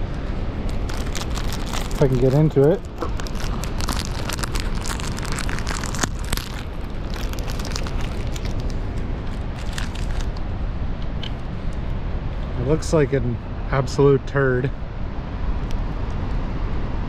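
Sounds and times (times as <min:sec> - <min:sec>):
snack wrapper crinkling and tearing: 0:00.6 - 0:10.4.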